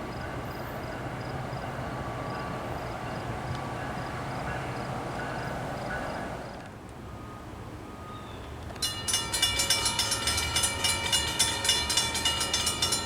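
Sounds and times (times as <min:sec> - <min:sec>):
train rumbling: 0:00.0 - 0:13.0
crossing bell ringing: 0:08.8 - 0:13.0.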